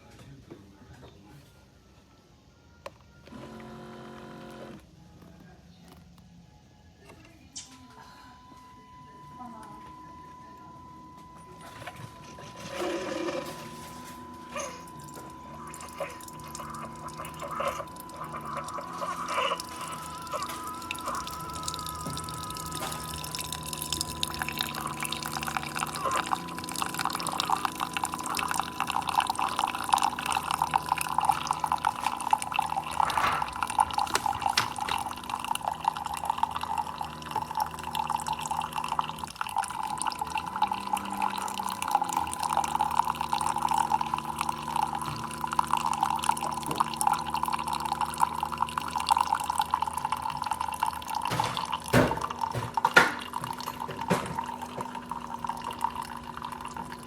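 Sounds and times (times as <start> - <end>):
coffee maker hum: 2.1 - 7.2, 7.8 - 57.0
water bubbling and dripping: 15.0 - 52.0.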